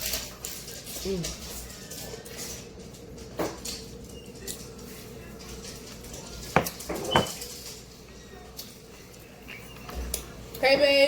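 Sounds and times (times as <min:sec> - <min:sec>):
tableware clinking: 0:05.5 - 0:07.9.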